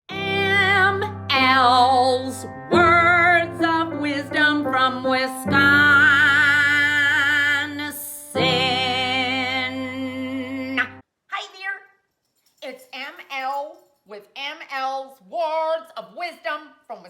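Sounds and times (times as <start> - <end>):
person singing with vibrato: 0.1 - 11.0.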